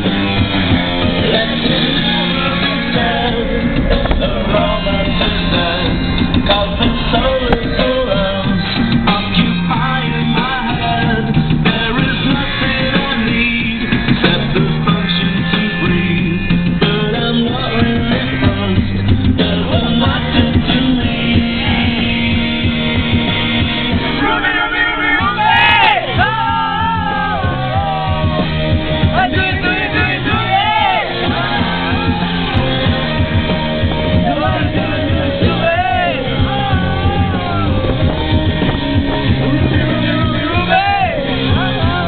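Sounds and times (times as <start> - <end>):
loud rock music: 0.0 - 42.0
person singing and shouting: 24.1 - 28.4, 29.0 - 32.4.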